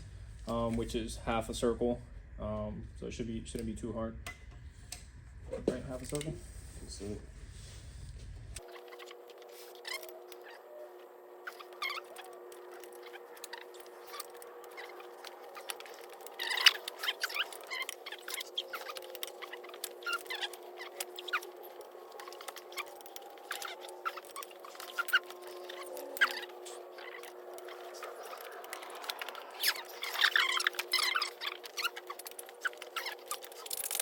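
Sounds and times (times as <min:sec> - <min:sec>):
steady hum: 0:00.0 - 0:34.0
breaker bar clicks and creaks: 0:11.4 - 0:34.0.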